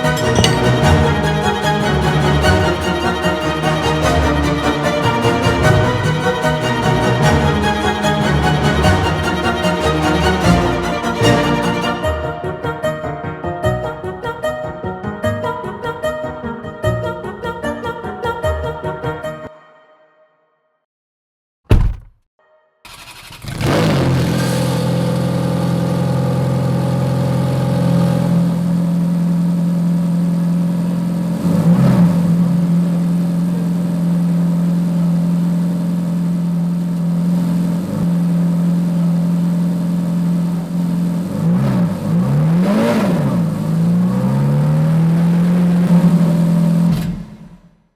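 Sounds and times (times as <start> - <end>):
engine revving: 22.9 - 26.6, 41.2 - 46.9
car engine starting and idling: 22.9 - 47.5.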